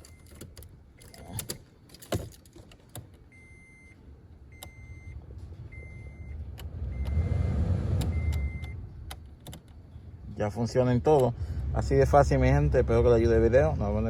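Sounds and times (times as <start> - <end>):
beeps: 3.3 - 8.9.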